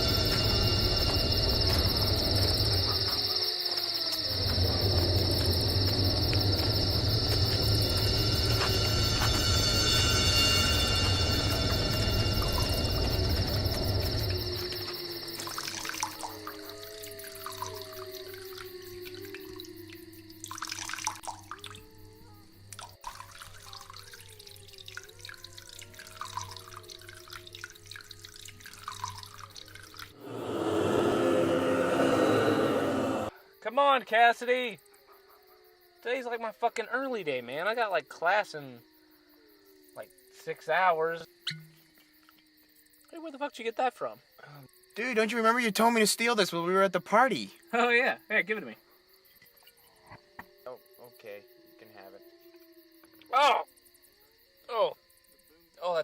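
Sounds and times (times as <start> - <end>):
crickets chirping: 0.0 - 56.0
water trickling and dripping: 4.2 - 30.2, 49.2 - 50.1.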